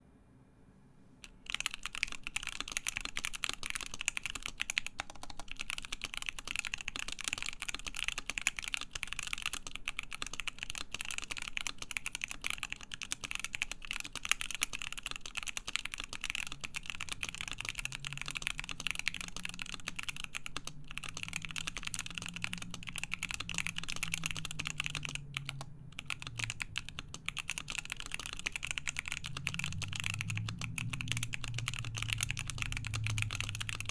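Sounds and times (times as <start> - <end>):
mechanical keyboard typing: 1.2 - 33.9.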